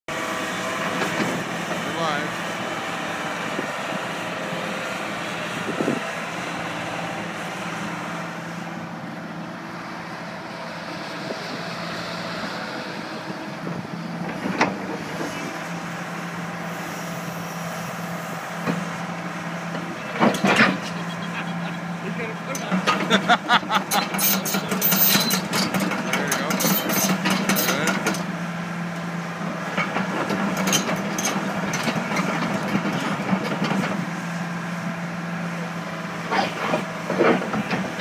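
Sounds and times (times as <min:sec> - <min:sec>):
excavator diesel engine running: 0:00.1 - 0:38.0
metal knocks and clanks: 0:23.9 - 0:28.2.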